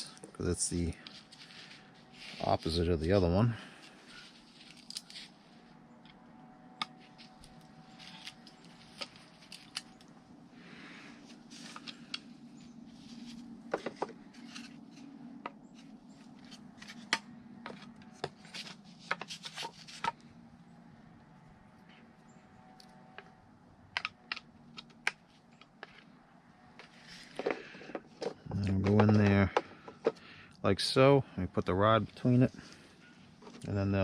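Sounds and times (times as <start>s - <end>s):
steady low hum: 0.0s - 34.0s
plastic parts clicking and scraping: 13.1s - 20.2s, 23.1s - 30.2s.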